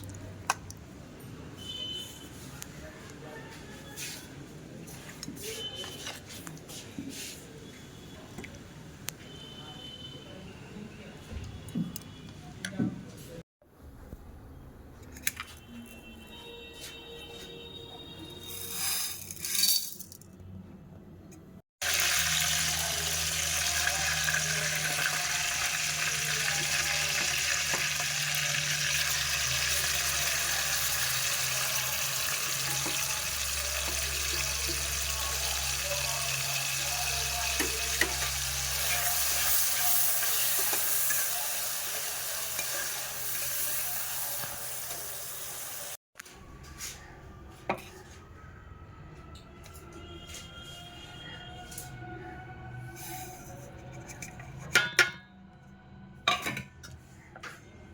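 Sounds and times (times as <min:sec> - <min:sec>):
food sizzling in hot oil: 0:21.8 - 0:46.0.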